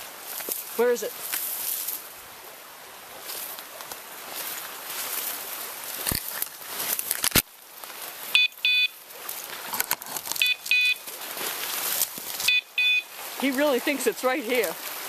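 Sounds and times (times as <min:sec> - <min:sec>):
beeper collar high beeps: 0:08.3 - 0:09.0, 0:10.4 - 0:11.0, 0:12.4 - 0:13.1.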